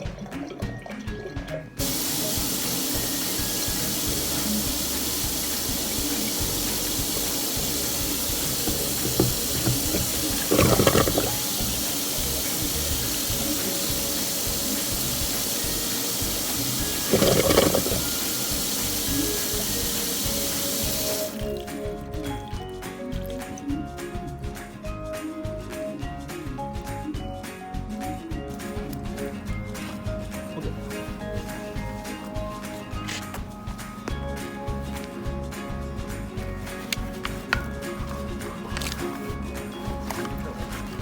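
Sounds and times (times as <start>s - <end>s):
water running into a drain: 1.8s - 22.6s.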